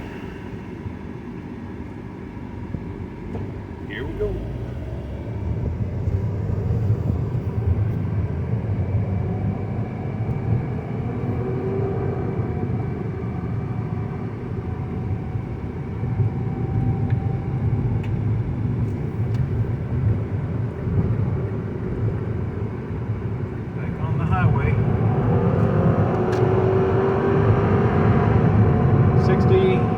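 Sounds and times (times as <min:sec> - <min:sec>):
car engine rumble: 0:00.0 - 0:29.9
road noise inside car: 0:00.0 - 0:29.9.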